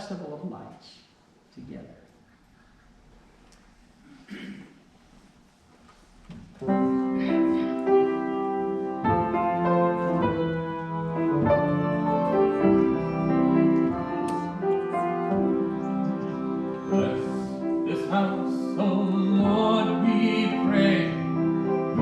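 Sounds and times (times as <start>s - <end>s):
slow classical piano piece: 6.1s - 22.0s.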